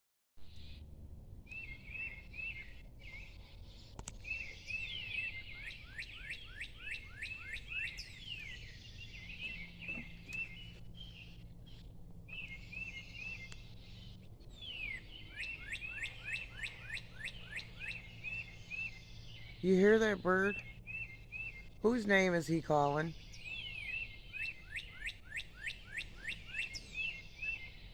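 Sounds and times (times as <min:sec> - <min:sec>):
low steady hum: 0:00.4 - 0:27.9
songbirds chirping: 0:00.4 - 0:27.9
down-slurred bird whistles: 0:01.5 - 0:27.9.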